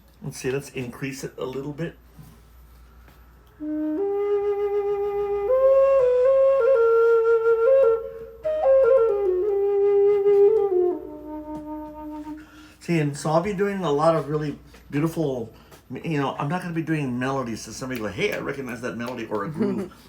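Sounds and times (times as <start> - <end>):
low flute with reverb: 3.6 - 12.5.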